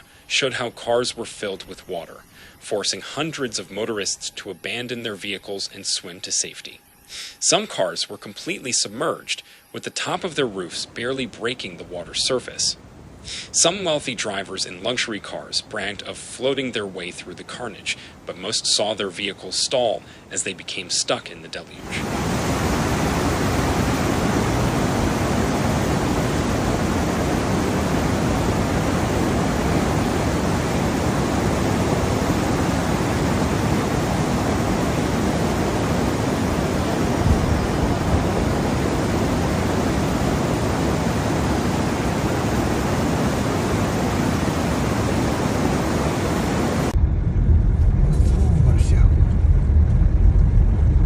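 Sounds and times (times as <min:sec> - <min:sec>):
heavy rain pouring: 0:21.8 - 0:47.0.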